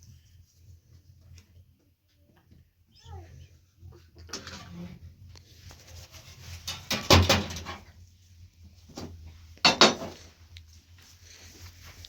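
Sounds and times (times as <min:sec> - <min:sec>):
hard objects knocking and clattering: 0:06.6 - 0:07.9, 0:09.0 - 0:10.3.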